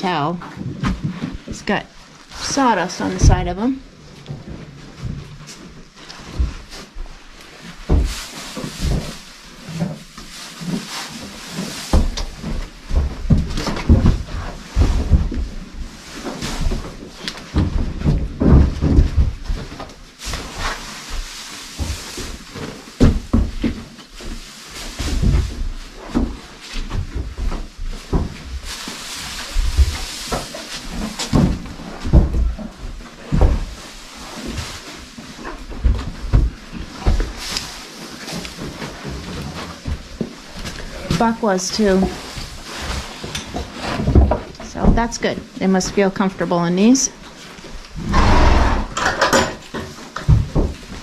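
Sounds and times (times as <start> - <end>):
rustling: 0.0 - 51.0
knocks and thumps: 7.8 - 10.1, 11.6 - 20.4, 21.8 - 24.4, 25.0 - 33.8, 35.6 - 37.7, 38.3 - 46.3, 47.8 - 51.0
knocks and thuds: 7.9 - 9.2, 17.5 - 19.8, 29.5 - 33.7.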